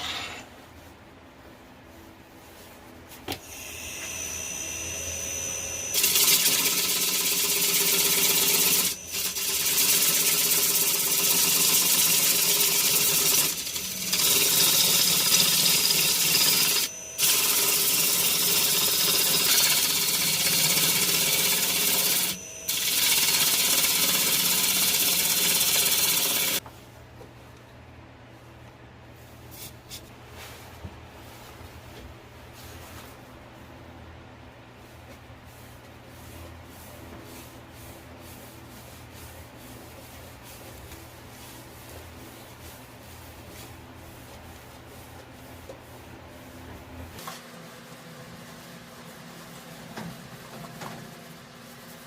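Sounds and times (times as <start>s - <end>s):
power tool motor working wood: 3.5s - 26.6s.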